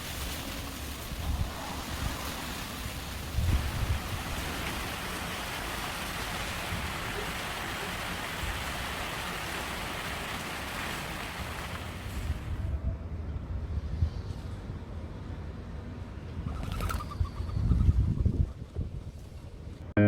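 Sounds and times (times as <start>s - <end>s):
wind blowing: 0.0s - 15.6s, 16.3s - 19.9s
wind buffeting microphone: 1.0s - 9.0s, 16.3s - 19.8s.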